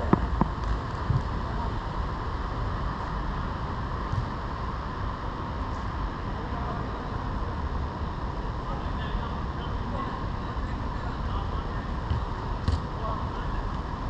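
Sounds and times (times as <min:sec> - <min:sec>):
wind rumble on microphone: 0:00.0 - 0:14.0.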